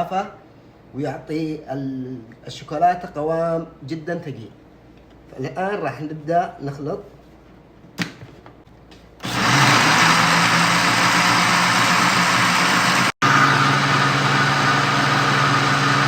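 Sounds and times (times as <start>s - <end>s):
electric blender running: 9.2s - 16.0s.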